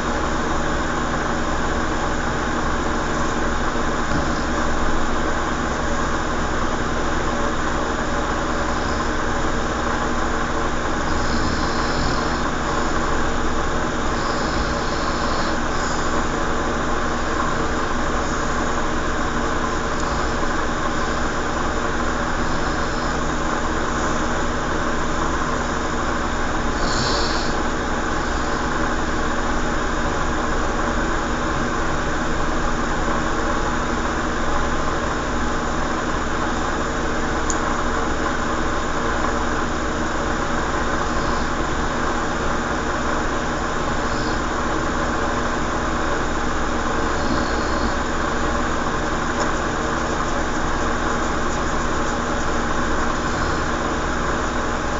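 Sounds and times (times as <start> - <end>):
noisy hiss: 0.0 - 54.9
steady machine hum: 0.0 - 54.9.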